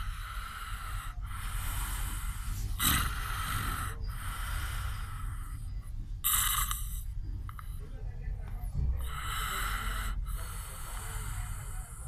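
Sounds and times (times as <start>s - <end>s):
snoring: 0.0s - 5.6s, 6.2s - 7.0s, 9.0s - 12.0s.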